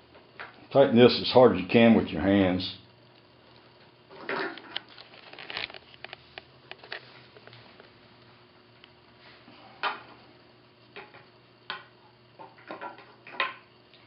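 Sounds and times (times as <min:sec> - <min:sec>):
cord creaking against a bar: 0:04.5 - 0:07.1.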